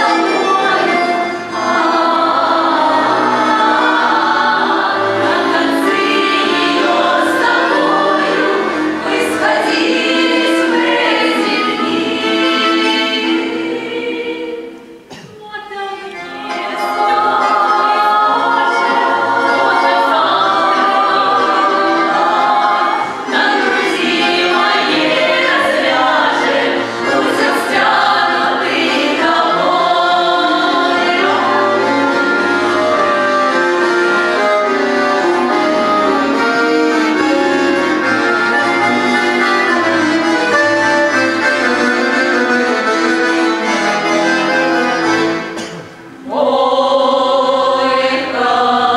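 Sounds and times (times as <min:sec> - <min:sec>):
accordion: 0:00.0 - 0:15.1, 0:16.0 - 0:48.9
women's vocal ensemble singing: 0:00.0 - 0:33.3, 0:45.5 - 0:48.9.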